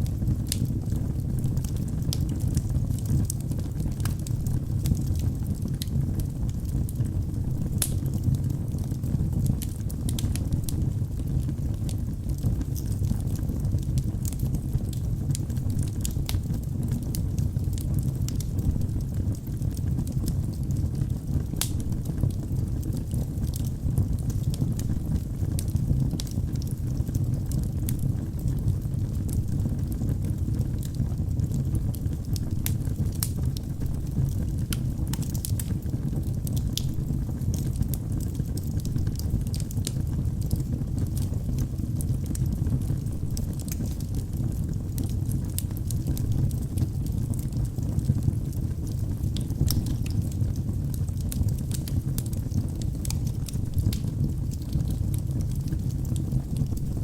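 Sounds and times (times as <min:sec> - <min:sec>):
low rush of flame: 0:00.0 - 0:57.0
wood crackling and popping: 0:00.0 - 0:57.0.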